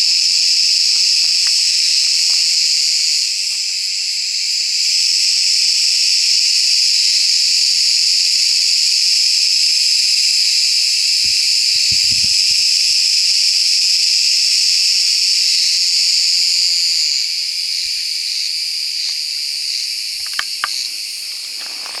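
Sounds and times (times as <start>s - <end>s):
cicada buzzing drone: 0.0s - 22.0s
faint knocks and clicks: 20.2s - 22.0s.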